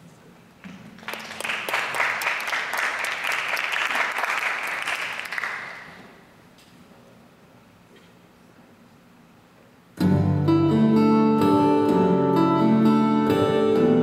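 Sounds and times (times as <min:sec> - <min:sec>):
audience applause: 0:01.0 - 0:06.0.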